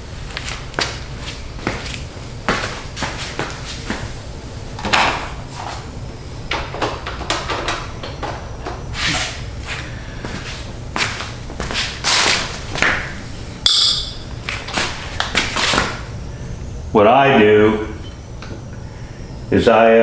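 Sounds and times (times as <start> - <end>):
metal tools clinking and knocking: 6.5 - 8.8
ringing metallic ping: 13.6 - 14.3.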